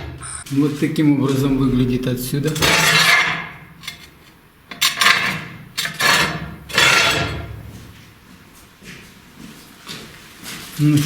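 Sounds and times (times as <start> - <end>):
trowel scraping and clinking: 2.4 - 7.6.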